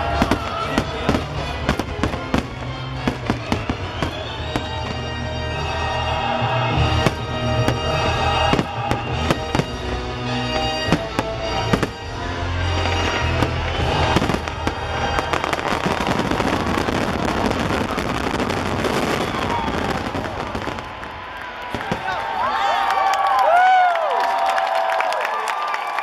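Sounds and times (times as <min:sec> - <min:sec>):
fireworks crackling and popping: 0:00.0 - 0:05.2, 0:07.0 - 0:22.3
fireworks bangs: 0:00.0 - 0:06.0, 0:06.6 - 0:22.4
orchestral music: 0:00.0 - 0:21.0.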